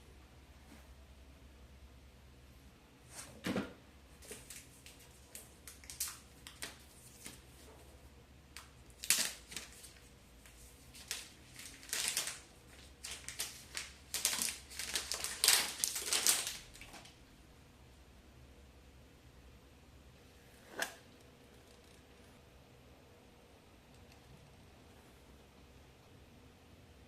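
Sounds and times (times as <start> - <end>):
packaging crinkling and rustling: 8.9 - 17.2.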